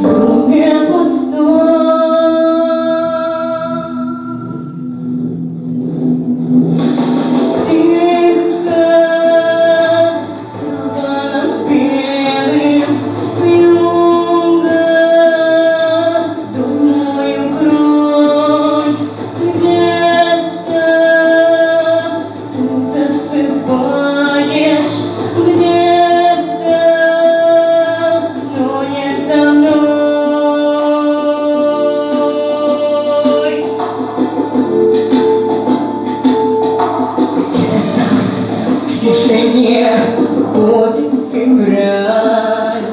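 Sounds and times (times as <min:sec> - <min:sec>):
person singing long notes: 0:07.5 - 0:35.4, 0:37.4 - 0:42.9.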